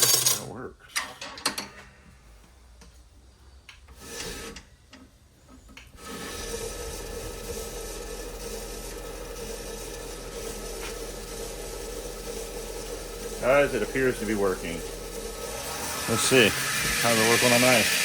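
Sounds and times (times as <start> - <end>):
belt grinder running: 6.0 - 18.0.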